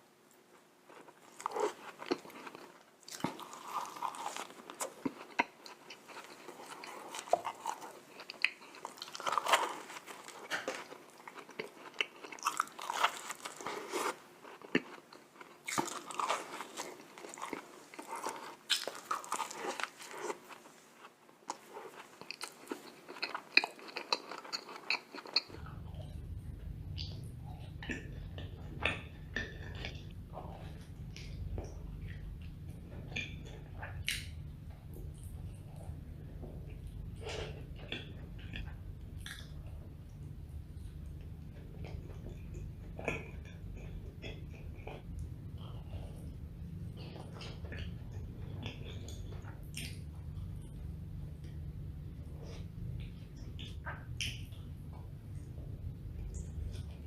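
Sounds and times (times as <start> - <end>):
biting and chewing donuts: 0.9 - 57.0
low hum: 25.5 - 57.0.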